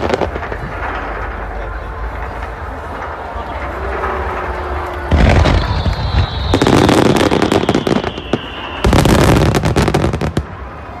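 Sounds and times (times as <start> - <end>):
fireworks crackling: 0.0 - 11.0
falling firework whistle: 4.2 - 10.7.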